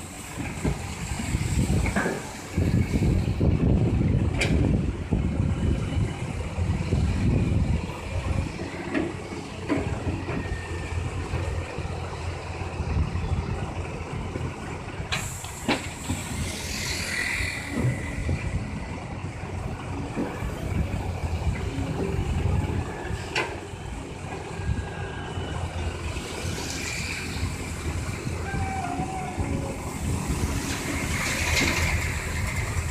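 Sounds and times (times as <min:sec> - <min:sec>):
excavator diesel engine running: 0:00.0 - 0:32.9
hydraulic hiss: 0:15.2 - 0:18.6.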